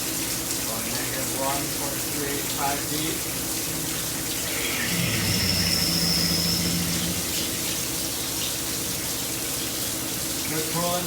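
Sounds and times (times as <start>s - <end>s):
coolant hissing and splashing: 0.0s - 11.0s
low steady hum: 3.3s - 8.7s
drill cutting with high whine: 4.4s - 8.0s.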